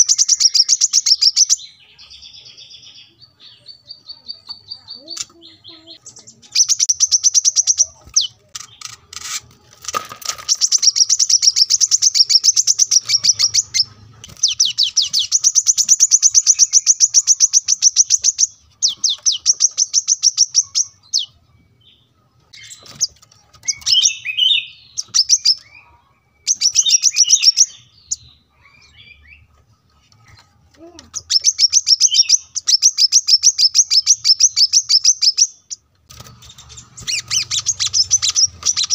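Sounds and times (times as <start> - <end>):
bird chattering notes: 0.0 - 9.5, 10.4 - 21.4, 30.8 - 35.8, 36.5 - 38.9.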